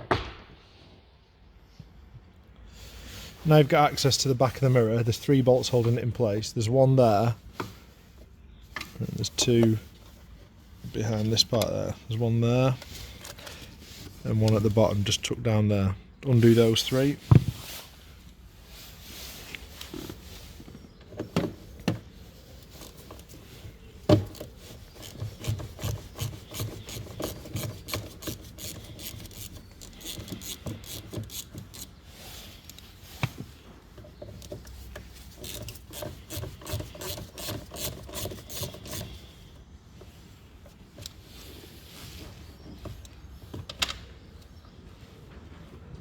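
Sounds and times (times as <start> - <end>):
ratchet tool clicking and rasping: 24.1 - 32.0, 34.4 - 39.4.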